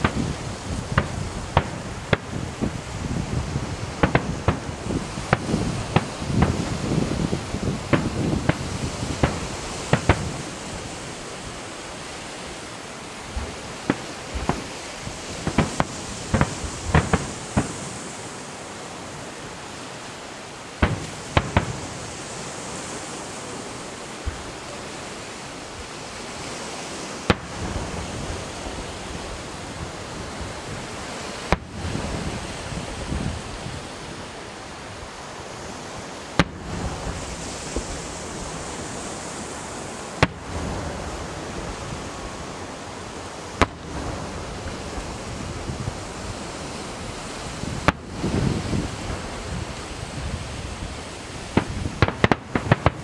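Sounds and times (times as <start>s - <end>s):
firework shells bursting: 0.0s - 11.4s, 13.3s - 18.9s, 20.7s - 23.2s, 27.1s - 28.1s, 31.1s - 31.8s, 36.3s - 39.3s, 40.0s - 40.9s, 43.2s - 45.2s, 51.4s - 53.0s
firework crackle and rumble: 0.0s - 53.0s
steady hiss of wind and sea: 0.0s - 53.0s.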